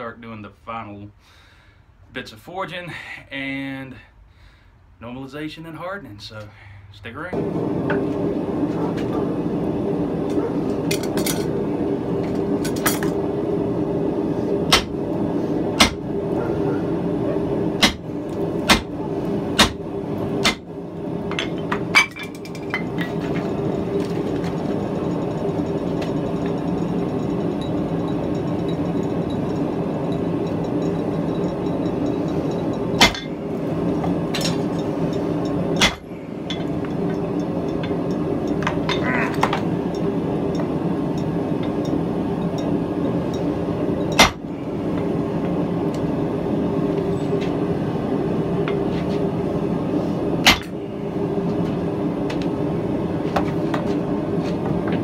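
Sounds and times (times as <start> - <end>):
steady low hum: 0.0 - 55.0
hammer striking metal on anvil: 14.7 - 15.0, 15.8 - 16.0, 17.8 - 18.0, 18.7 - 18.9, 19.6 - 19.8, 20.4 - 20.6, 30.5 - 33.3, 34.4 - 36.8, 44.1 - 44.4, 50.5 - 50.7.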